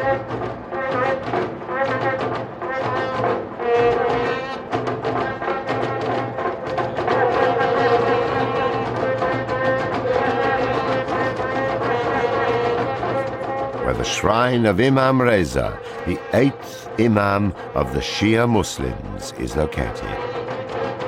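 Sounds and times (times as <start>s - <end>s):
brass horns holding long notes: 10.4s - 20.5s.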